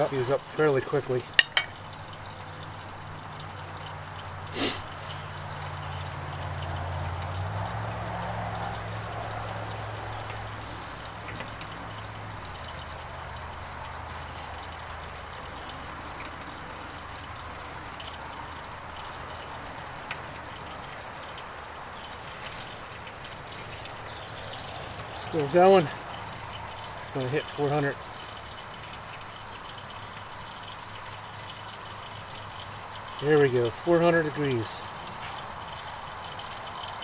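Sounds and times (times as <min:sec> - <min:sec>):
meat sizzling on a grill: 0:00.0 - 0:37.0.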